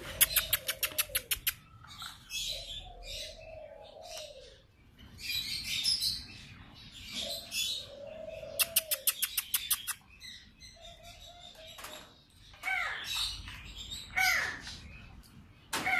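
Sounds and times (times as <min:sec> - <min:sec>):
sharp clicking bird chips: 0:00.0 - 0:02.0, 0:08.6 - 0:10.2
doves cooing: 0:00.0 - 0:10.0, 0:10.7 - 0:13.3
birds chirping: 0:00.0 - 0:15.9.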